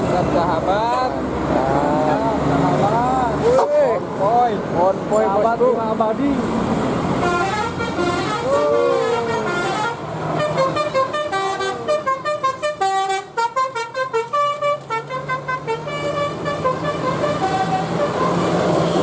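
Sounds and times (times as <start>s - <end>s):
bus engine hum: 0.0s - 19.0s
bus musical horn melody: 7.2s - 19.0s.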